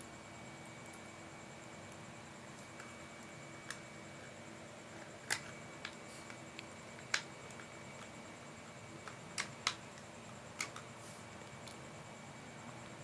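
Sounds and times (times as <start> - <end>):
faint steady hiss: 0.0 - 13.0
small parts clicking and tapping: 5.0 - 11.8.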